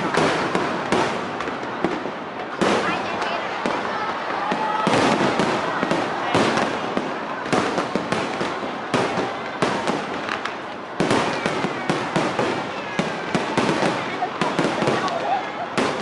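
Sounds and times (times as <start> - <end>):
fireworks bangs and cracks: 0.0 - 16.0
fireworks crackle: 0.0 - 16.0.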